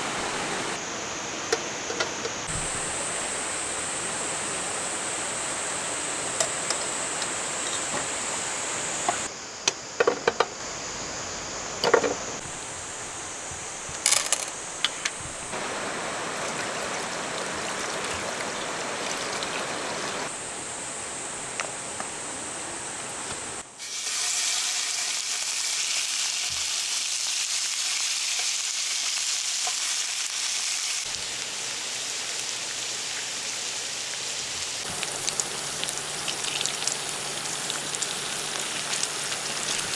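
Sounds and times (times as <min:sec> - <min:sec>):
food sizzling in a pan: 0:23.8 - 0:39.9.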